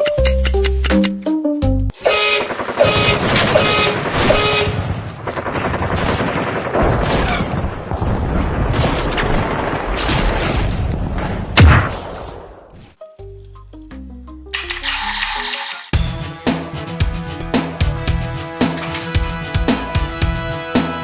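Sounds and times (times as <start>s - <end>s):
music: 0.0s - 2.0s, 13.0s - 21.0s
rapid volley of sharp bangs: 2.0s - 12.5s.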